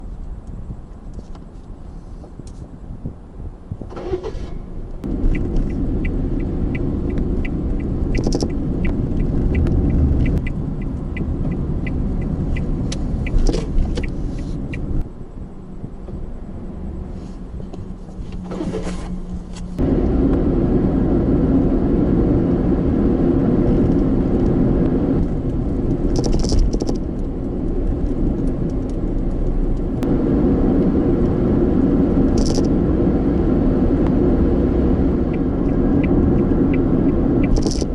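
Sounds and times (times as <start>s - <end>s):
vehicle engine and road rumble: 0.0s - 37.9s
regular ticking: 5.0s - 15.0s.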